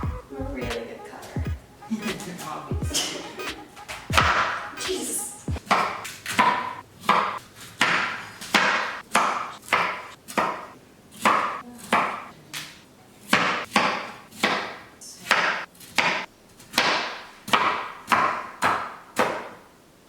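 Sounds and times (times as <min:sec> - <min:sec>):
knife chopping on cutting board: 0:05.6 - 0:12.3, 0:13.3 - 0:19.6.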